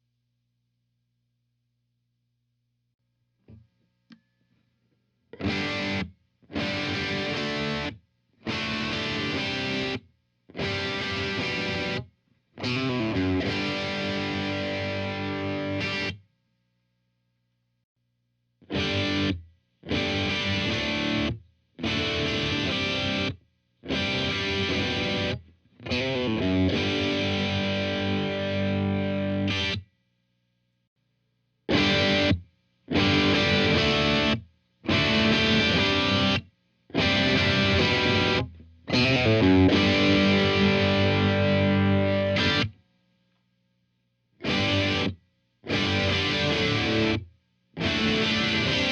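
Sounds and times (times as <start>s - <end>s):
distorted electric guitar chords: 5.4s - 10.0s, 10.6s - 12.0s, 12.6s - 16.2s, 18.6s - 29.8s, 31.7s - 42.7s, 44.4s - 47.2s, 47.8s - 48.9s.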